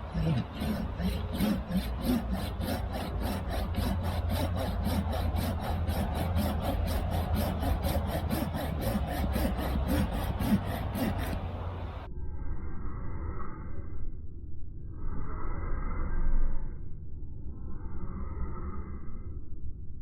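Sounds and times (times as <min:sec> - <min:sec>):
pull saw cutting wood: 0:00.0 - 0:12.1.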